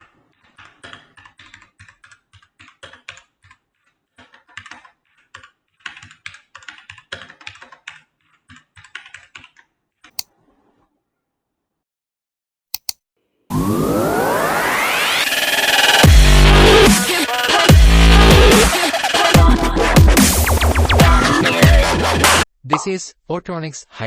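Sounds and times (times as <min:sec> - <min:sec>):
mechanical keyboard typing: 0:00.4 - 0:09.7.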